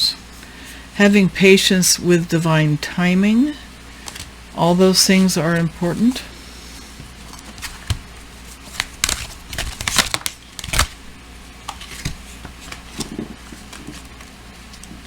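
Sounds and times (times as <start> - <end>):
cards being shuffled: 7.3 - 11.0, 11.6 - 15.0.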